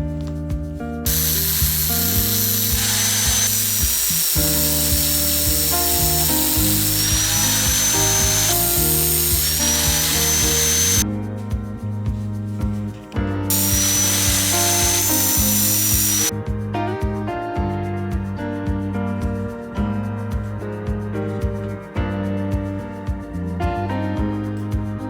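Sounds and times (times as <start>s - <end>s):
background music: 0.0s - 25.0s
metal cutting hiss: 1.1s - 11.0s, 13.5s - 16.3s
power tool motor whining: 1.1s - 11.0s, 13.5s - 16.3s.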